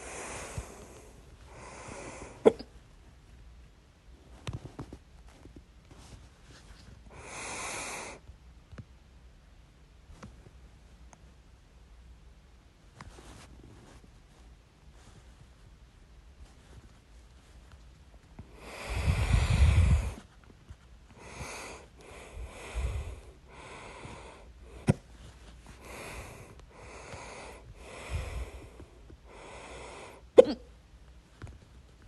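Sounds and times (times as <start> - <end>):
heavy breathing: 0.0 - 2.5, 7.1 - 8.2, 18.4 - 20.3, 21.1 - 25.0, 25.6 - 30.4
person hiccupping: 2.4 - 2.7, 30.4 - 30.7.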